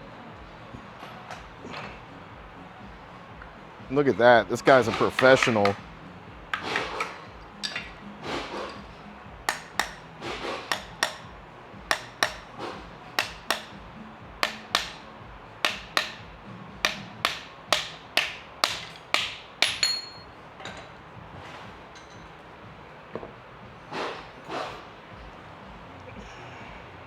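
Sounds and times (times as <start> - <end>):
hammer striking metal: 4.8 - 5.9, 6.5 - 20.3.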